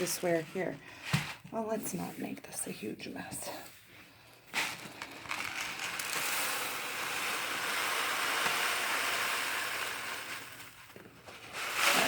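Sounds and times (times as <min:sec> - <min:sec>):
dry rice pouring: 0:04.5 - 0:12.0.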